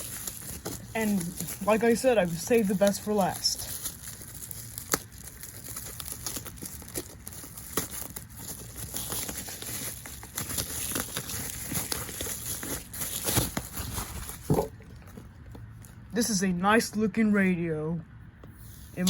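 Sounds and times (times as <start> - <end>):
plastic packaging crinkling: 0.0 - 16.1.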